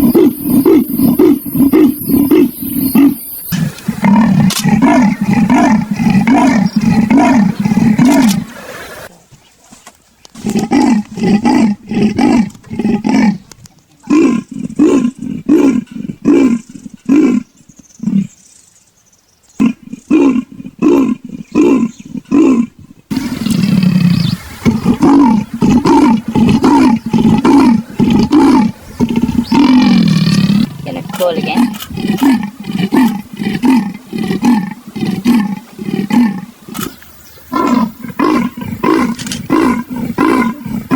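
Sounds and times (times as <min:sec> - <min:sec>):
leopard sawing call: 0:23.1 - 0:40.9.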